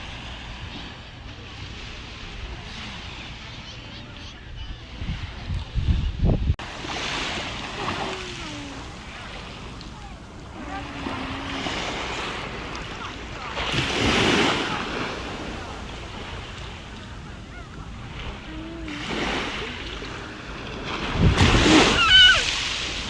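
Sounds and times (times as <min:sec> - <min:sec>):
wind buffeting microphone: 0:04.4 - 0:23.0
sea waves washing onto shore: 0:06.6 - 0:23.0.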